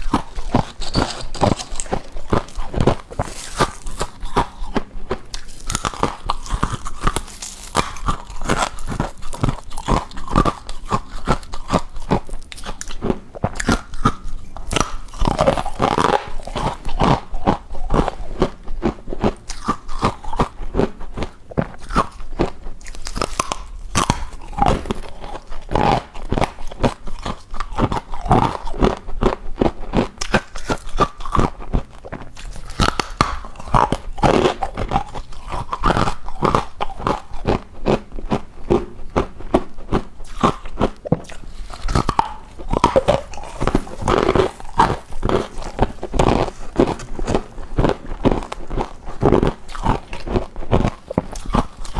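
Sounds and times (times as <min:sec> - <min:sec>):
crunching and chewing ice: 0:00.0 - 0:51.9.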